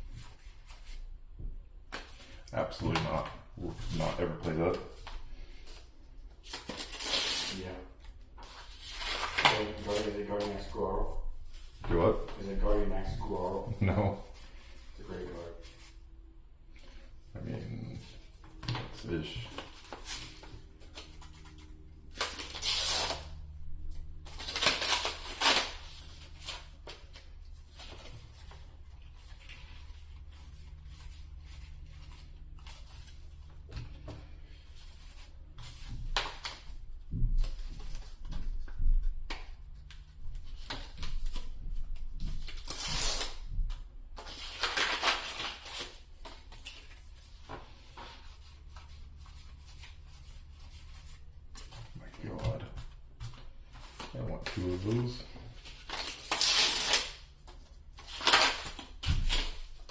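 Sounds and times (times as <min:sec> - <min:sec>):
steady low hum: 0:00.0 - 0:58.2
foil packs tearing and crinkling: 0:06.4 - 0:07.8, 0:22.1 - 0:23.4, 0:24.3 - 0:27.1, 0:42.4 - 0:43.4, 0:44.2 - 0:46.9, 0:54.6 - 0:57.2, 0:58.0 - 0:59.9.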